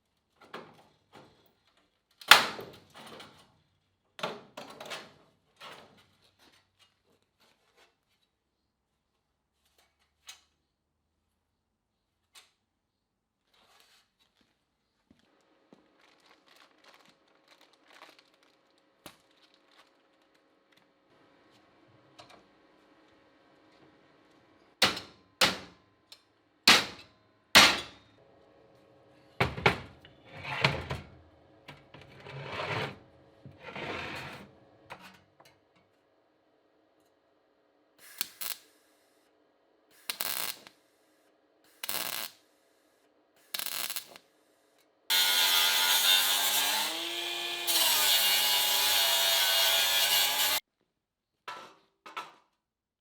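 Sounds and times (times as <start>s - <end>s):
hand tool scraping strokes: 31.7s - 34.6s, 45.1s - 50.6s.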